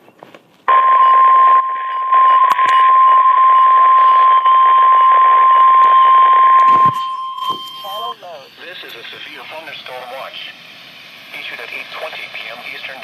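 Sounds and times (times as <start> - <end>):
steady alarm tone: 0.7 - 8.9
radio hiss: 7.6 - 13.0.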